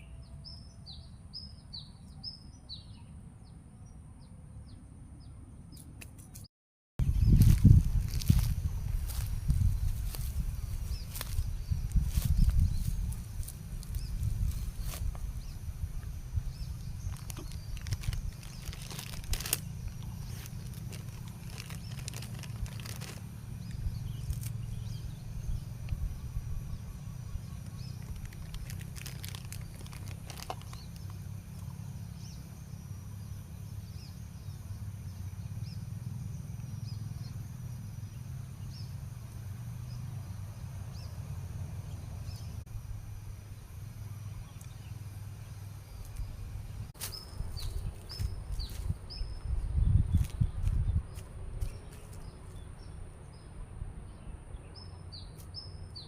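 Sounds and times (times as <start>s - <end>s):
steady low rumble: 7.0s - 38.1s, 40.2s - 55.1s
crackles and rustling clicks: 17.0s - 24.6s, 27.7s - 31.7s.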